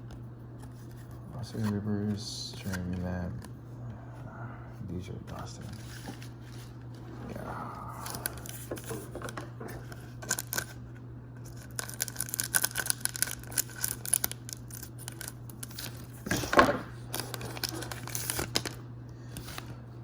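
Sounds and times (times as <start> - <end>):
cards being handled: 0.1 - 3.6, 5.2 - 10.8, 11.4 - 19.7
foil pack crinkling and tearing: 8.0 - 10.8, 11.4 - 18.8.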